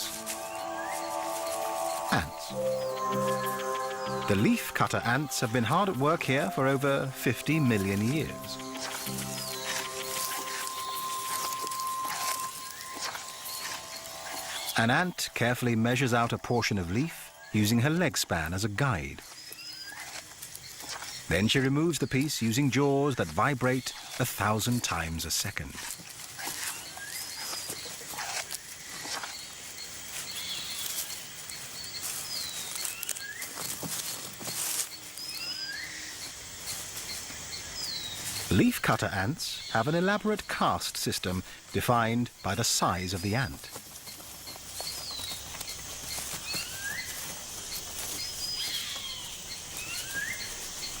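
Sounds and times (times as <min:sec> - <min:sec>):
short high chirps: 0:00.0 - 0:15.3
birds whistling: 0:00.0 - 0:15.4, 0:34.6 - 0:40.0, 0:42.4 - 0:51.0
insect hiss: 0:00.0 - 0:51.0
rainforest ambience: 0:00.0 - 0:51.0
ants snipping leaves: 0:04.3 - 0:14.8, 0:25.5 - 0:38.7, 0:42.5 - 0:51.0.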